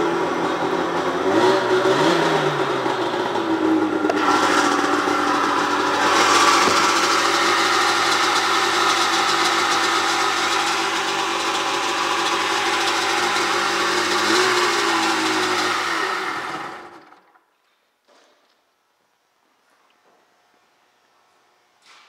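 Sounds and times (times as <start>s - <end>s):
jet ski engine idling: 0.0s - 17.2s.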